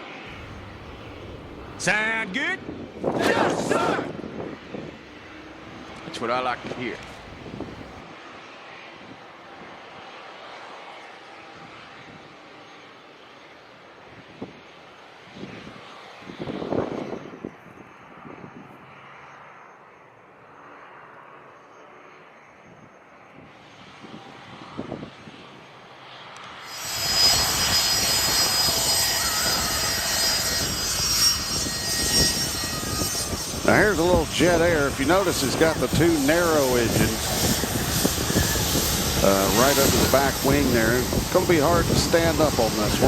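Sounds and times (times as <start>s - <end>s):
jet engines droning: 0.0s - 43.0s
irregular rumbling: 0.3s - 2.1s, 4.9s - 8.0s.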